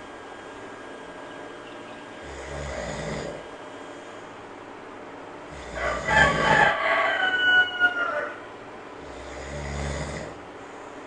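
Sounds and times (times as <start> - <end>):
monkey snoring: 2.2 - 3.5, 5.5 - 6.5, 9.0 - 10.4.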